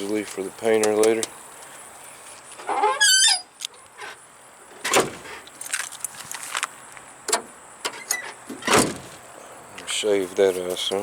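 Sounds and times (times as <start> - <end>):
car body hardware clunks: 7.3 - 9.2.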